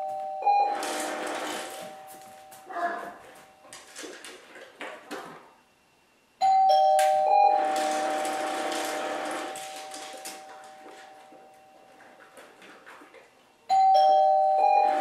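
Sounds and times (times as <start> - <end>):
doorbell ding-dong chime: 0.0 - 3.6, 6.4 - 11.8, 13.7 - 15.0.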